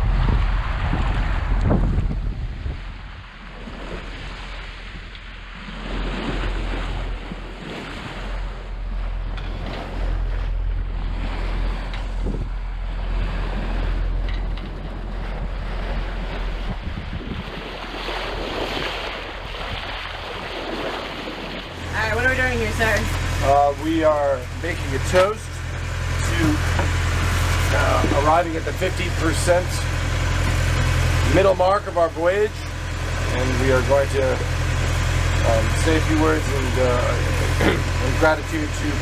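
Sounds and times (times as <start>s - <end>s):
wind buffeting microphone: 0.0s - 4.4s, 12.1s - 31.8s
waves washing past hull: 0.0s - 39.0s.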